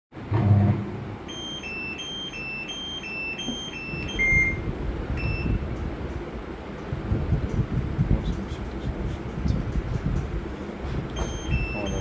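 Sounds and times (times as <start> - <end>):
low rumbling noise: 0.2 - 1.4, 3.7 - 12.0
washing machine beeps: 1.2 - 5.7, 11.1 - 12.0.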